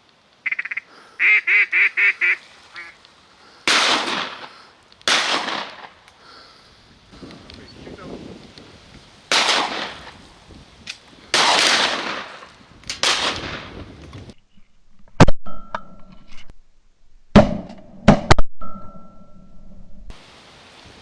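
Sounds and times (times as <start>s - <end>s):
shotgun shots: 3.7s - 6.0s, 9.3s - 10.1s, 11.3s - 13.8s
wind gusting on microphone: 6.6s - 14.4s.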